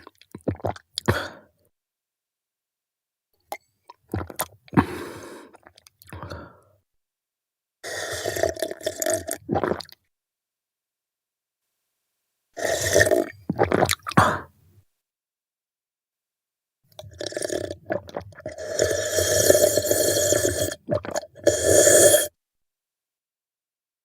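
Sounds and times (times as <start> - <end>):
man gulping milk: 0.0 - 1.2, 3.9 - 6.4, 8.0 - 10.0, 12.6 - 14.5, 16.9 - 22.3.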